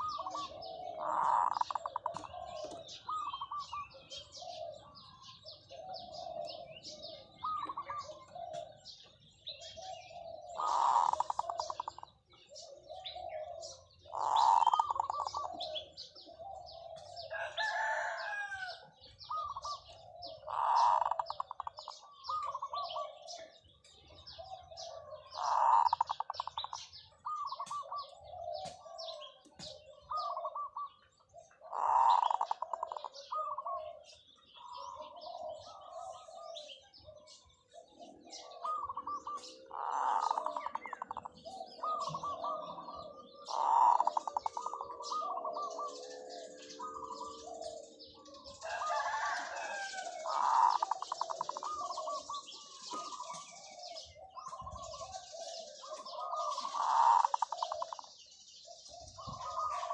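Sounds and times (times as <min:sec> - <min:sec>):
dove cooing: 0:00.0 - 0:59.9
small birds chirping: 0:00.0 - 0:59.9.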